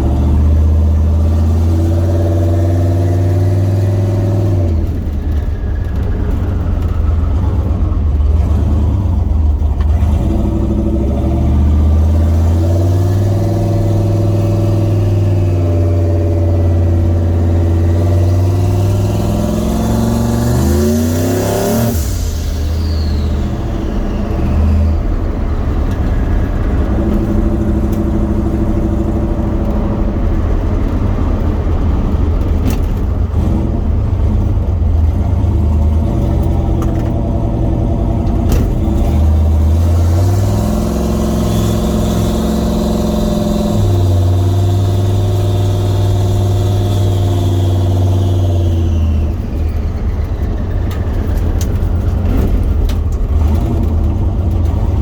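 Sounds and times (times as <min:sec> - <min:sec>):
truck engine driving: 0:00.0 - 0:55.0
faint high turbo whistle: 0:20.3 - 0:26.0.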